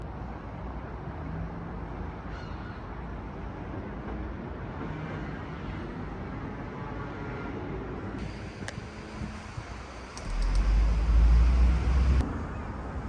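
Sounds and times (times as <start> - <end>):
low rumble with hiss: 8.2 - 13.0.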